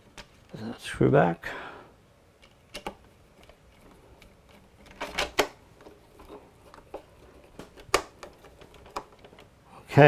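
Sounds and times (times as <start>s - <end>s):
small plastic parts clicking: 2.4s - 9.6s.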